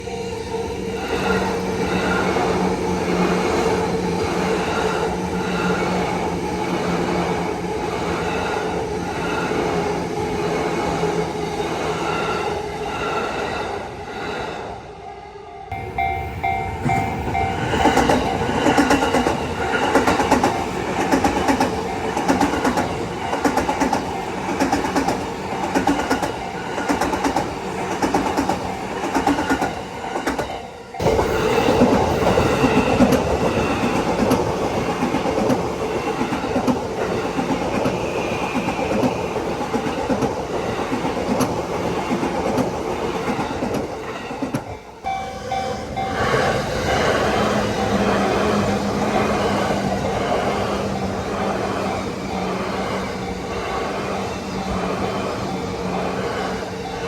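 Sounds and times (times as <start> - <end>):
train running noise: 0.0 - 57.0
train wheels clacking over rail joints: 16.8 - 44.8.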